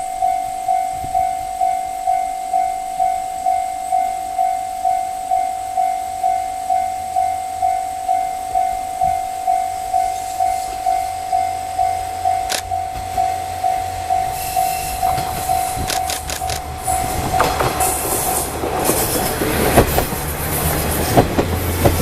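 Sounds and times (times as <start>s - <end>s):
level crossing bell ringing: 0.0s - 17.5s.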